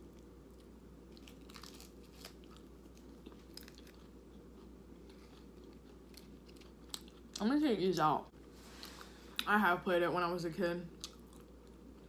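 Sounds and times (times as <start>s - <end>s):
low steady hum: 0.0s - 12.0s
chewing crunchy chips: 0.1s - 8.1s, 10.9s - 12.0s.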